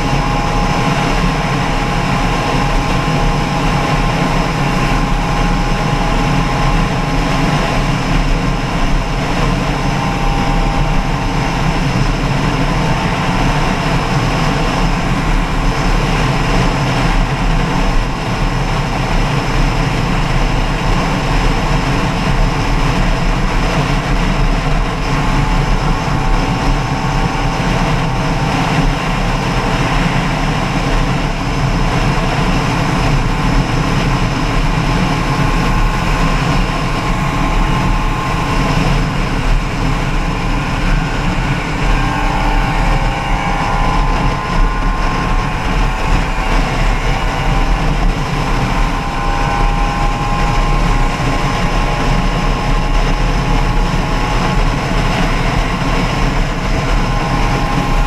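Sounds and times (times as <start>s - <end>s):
engine running with thin whine: 0.0s - 58.0s.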